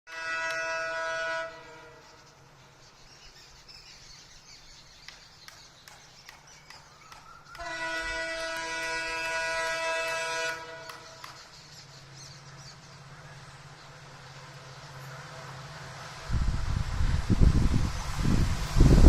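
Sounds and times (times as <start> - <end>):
locomotive horn blasts: 0.1 - 2.1, 7.6 - 11.2.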